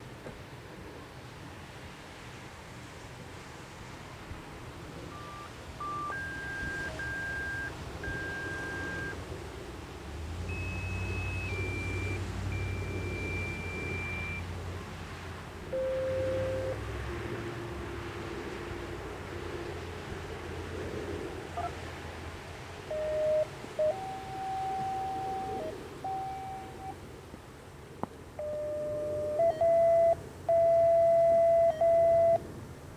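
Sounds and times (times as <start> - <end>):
electronic beep tones: 5.1 - 9.2, 10.5 - 14.4, 15.7 - 16.8, 22.9 - 26.9, 28.4 - 32.4.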